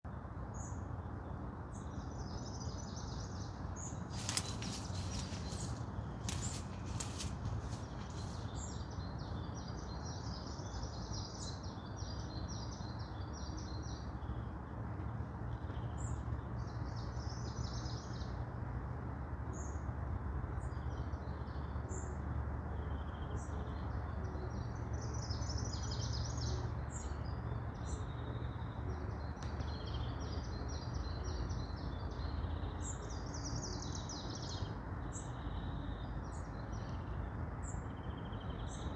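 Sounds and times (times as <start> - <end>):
songbirds trilling: 2.2 - 9.7.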